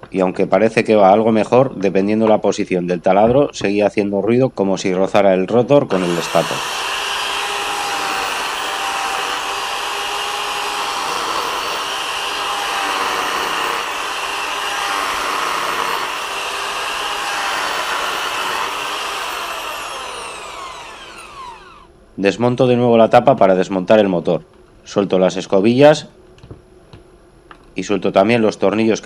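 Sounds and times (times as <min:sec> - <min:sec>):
electric drill motor whining: 0:05.9 - 0:21.9.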